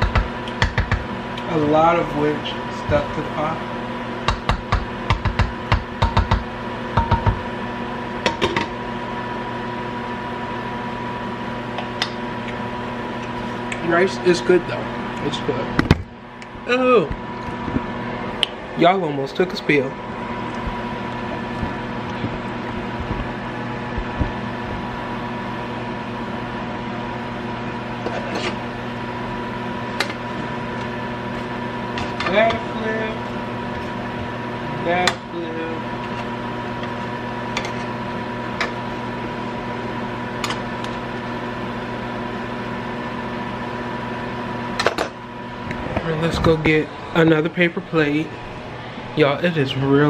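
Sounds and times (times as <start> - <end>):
steady appliance hum: 0.0 - 50.0
utensil knocking and scraping pot: 28.0 - 28.6.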